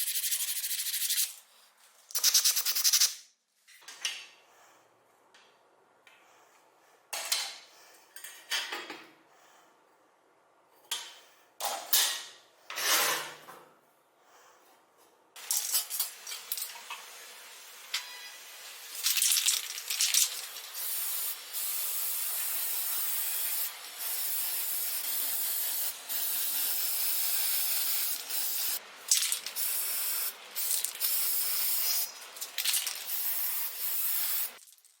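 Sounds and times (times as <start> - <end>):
spray hissing: 20.3 - 28.8.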